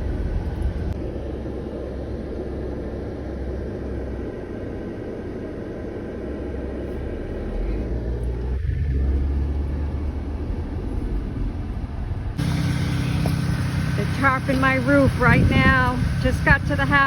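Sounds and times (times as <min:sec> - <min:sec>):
car road and engine rumble: 0:00.0 - 0:17.0.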